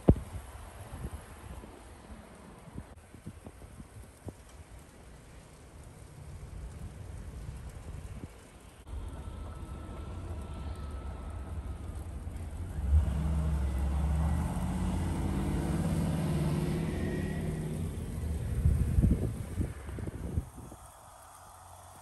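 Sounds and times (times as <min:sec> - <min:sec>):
car engine rumble: 0:00.0 - 0:22.0.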